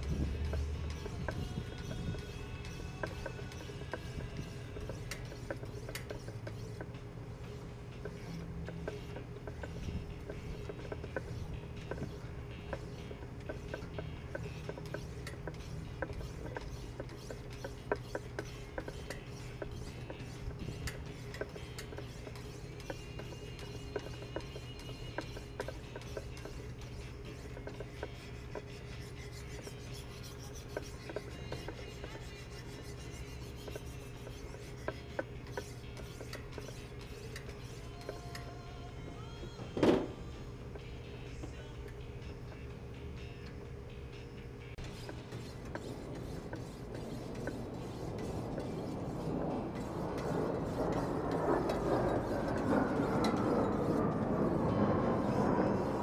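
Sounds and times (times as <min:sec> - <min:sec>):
low steady hum: 0:00.0 - 0:56.0
stone scraping knife blade: 0:00.1 - 0:06.9.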